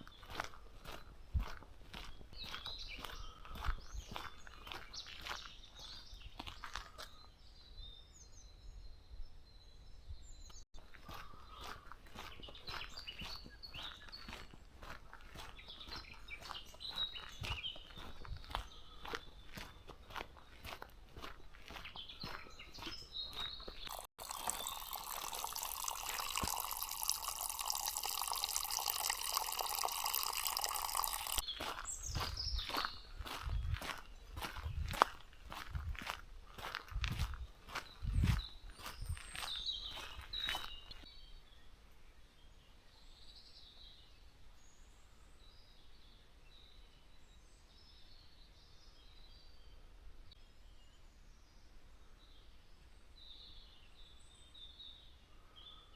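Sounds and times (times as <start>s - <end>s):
footsteps on a forest path: 0.0s - 7.5s, 10.5s - 41.1s
distant songbirds chirping: 0.0s - 55.9s
stream water rushing: 23.9s - 31.4s.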